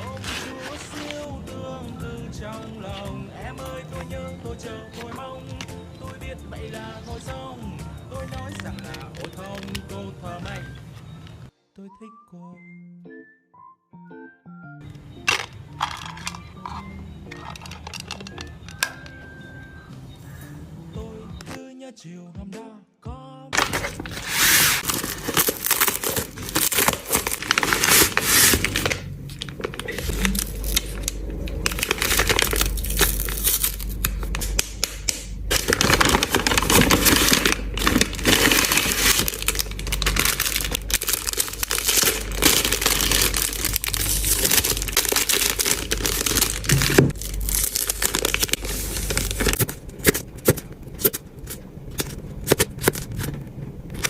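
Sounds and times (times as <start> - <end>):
plastic packaging crinkling and tearing: 0.0 - 1.4, 8.1 - 10.7, 23.6 - 54.0
low steady hum: 23.6 - 54.0.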